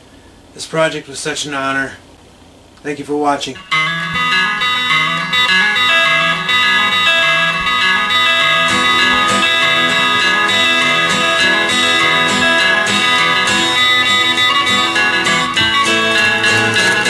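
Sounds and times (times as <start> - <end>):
guitar music: 3.4 - 17.0.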